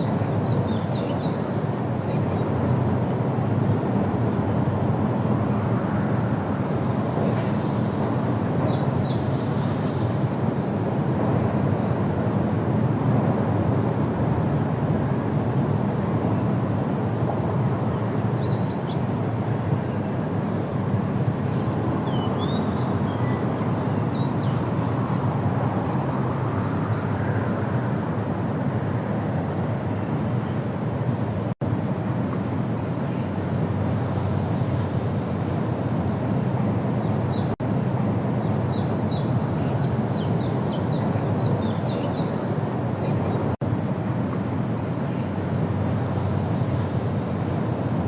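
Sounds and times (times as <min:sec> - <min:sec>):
small birds chirping: 0:00.0 - 0:02.5, 0:38.4 - 0:43.5
low outdoor rumble: 0:00.0 - 0:48.0.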